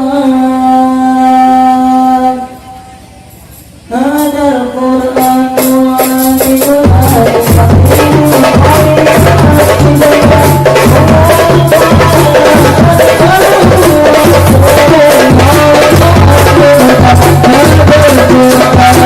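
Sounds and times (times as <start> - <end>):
rattling percussion: 3.2 - 19.0
frame drums and bass drum: 5.1 - 19.0.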